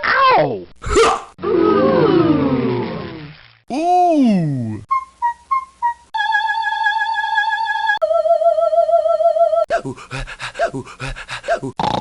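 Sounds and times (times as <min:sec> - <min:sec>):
short grunting sounds: 0:09.7 - 0:12.0.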